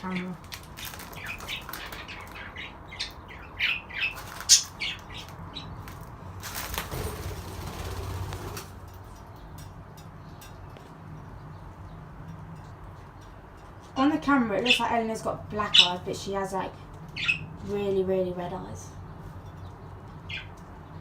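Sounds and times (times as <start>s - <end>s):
budgerigars chirping: 1.1s - 5.8s, 17.2s - 17.5s, 20.3s - 20.5s
wing flapping: 5.9s - 8.8s.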